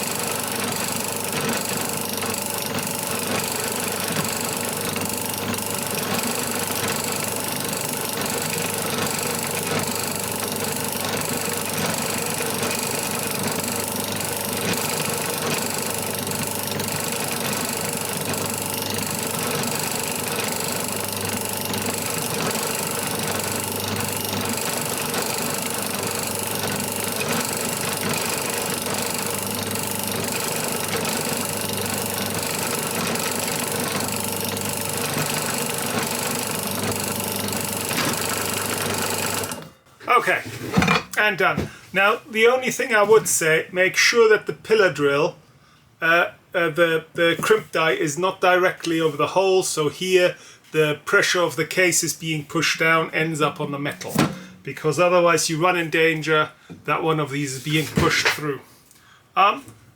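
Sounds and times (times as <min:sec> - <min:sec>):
pillar drill running: 0:00.0 - 0:39.8.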